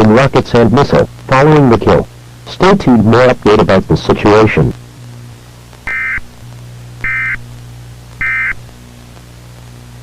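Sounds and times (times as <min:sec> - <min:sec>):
steady low hum: 0:00.0 - 0:10.0
digital data bursts: 0:05.8 - 0:06.3, 0:07.0 - 0:07.4, 0:08.2 - 0:08.6.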